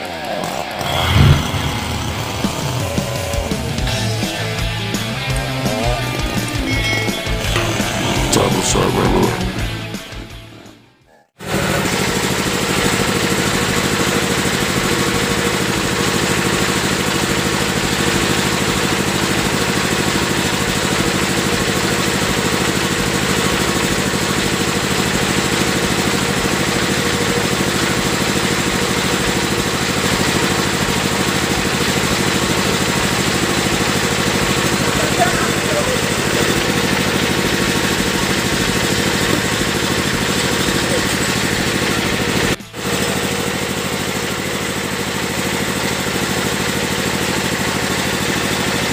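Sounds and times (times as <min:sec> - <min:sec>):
music: 0:01.4 - 0:11.0, 0:42.6 - 0:42.8
small engine running: 0:11.4 - 0:48.9.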